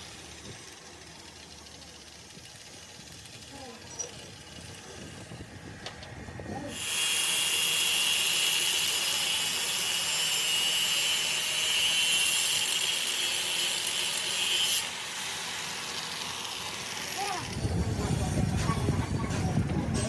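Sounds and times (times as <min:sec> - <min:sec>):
harsh metalworking hiss: 0:06.7 - 0:17.4.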